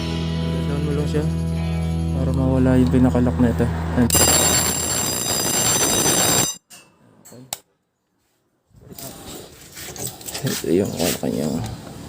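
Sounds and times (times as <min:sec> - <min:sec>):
fire alarm ringing: 0:04.1 - 0:06.6.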